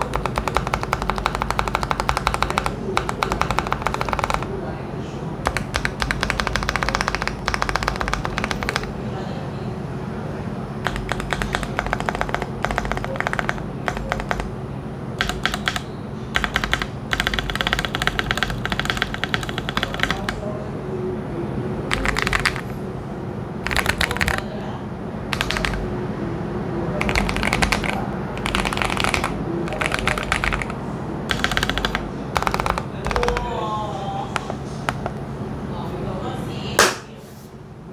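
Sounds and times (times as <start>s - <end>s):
mechanical keyboard typing: 0.0s - 4.6s, 5.4s - 9.0s, 10.8s - 14.6s, 15.2s - 20.4s, 21.9s - 22.8s, 23.6s - 24.6s, 25.3s - 26.0s, 27.0s - 33.7s, 34.3s - 35.2s
low steady background noise: 0.0s - 37.9s.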